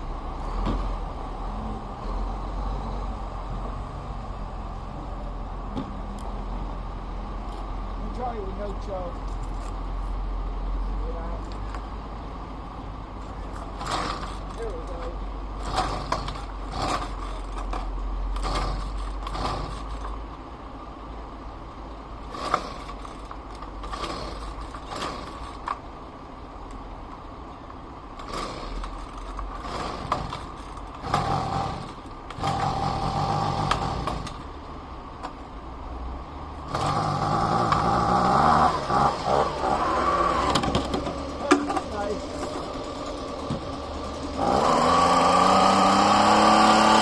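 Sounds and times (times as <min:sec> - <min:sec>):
pull starter cranking engine: 0:13.4 - 0:20.2, 0:22.2 - 0:25.8, 0:28.1 - 0:35.5, 0:36.6 - 0:47.0.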